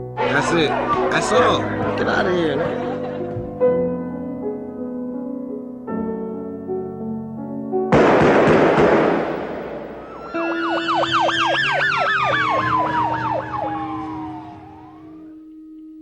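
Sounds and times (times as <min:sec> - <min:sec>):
emergency vehicle siren wailing: 0:00.0 - 0:02.3, 0:10.0 - 0:15.5
loud crash: 0:07.9 - 0:10.5.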